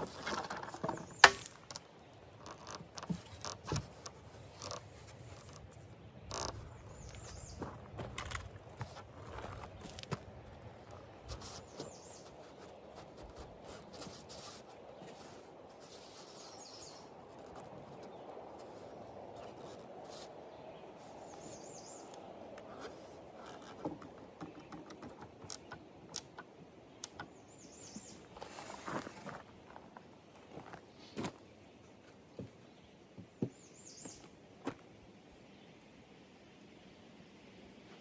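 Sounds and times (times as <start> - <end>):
sharp clicks and scrapes: 0.0 - 7.3
bird chirping: 6.7 - 7.8, 11.6 - 12.8, 16.3 - 17.1, 20.7 - 22.2, 26.9 - 28.5, 32.6 - 34.3.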